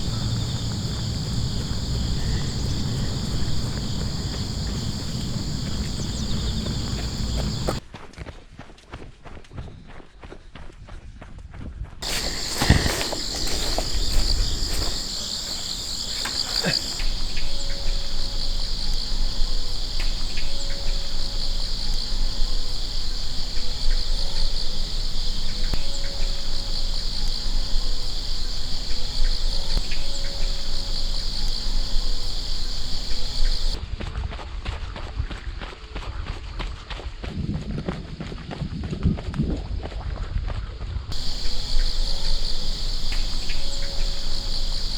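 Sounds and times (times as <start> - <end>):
insects chirring: 0.0 - 7.8, 12.0 - 33.8, 41.1 - 44.9.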